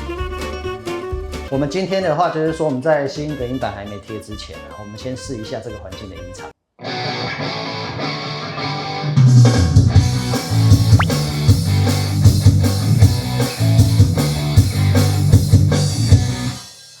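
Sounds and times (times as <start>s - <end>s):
bass guitar: 0.0s - 1.7s, 9.2s - 16.6s
rock music on electric guitar: 6.8s - 16.6s
drum kit beat: 9.5s - 16.6s.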